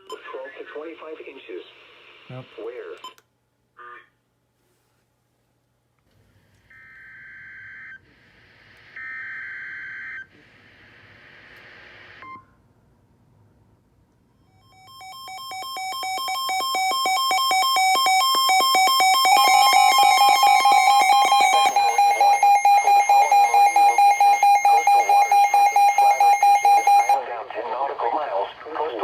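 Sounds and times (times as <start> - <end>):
receiver hiss: 10.4 - 12.3
pulsing electronic alert tone: 14.7 - 27.2
warbling digital tones: 14.8 - 27.2.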